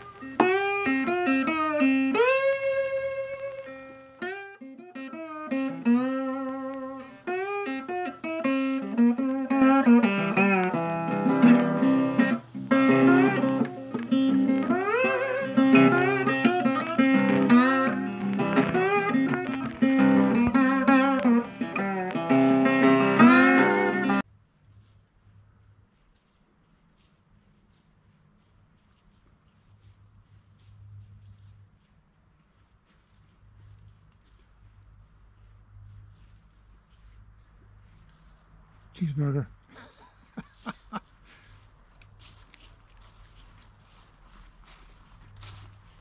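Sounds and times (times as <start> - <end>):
guitar with picked notes and bends: 0.0 - 24.2.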